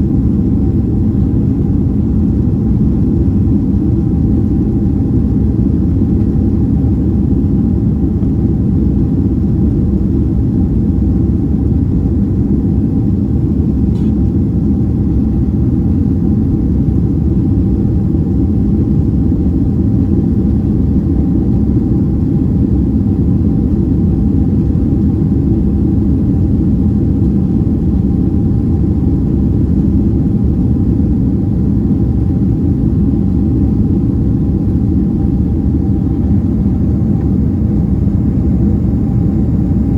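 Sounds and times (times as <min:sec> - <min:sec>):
aircraft cabin engine rumble: 0:00.0 - 0:39.9
faint steady hum: 0:00.0 - 0:39.9.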